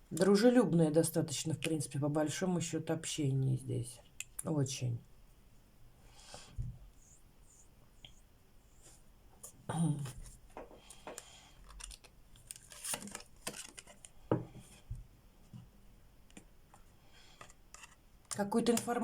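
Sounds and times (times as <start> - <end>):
cards rustling and sliding: 10.2 - 14.8, 17.4 - 18.0.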